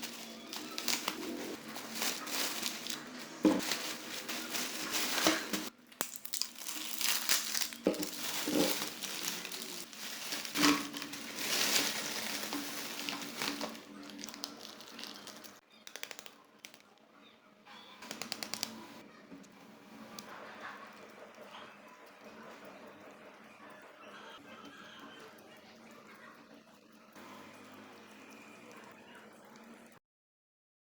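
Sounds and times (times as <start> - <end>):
packaging crinkling and rustling: 0.0 - 16.9.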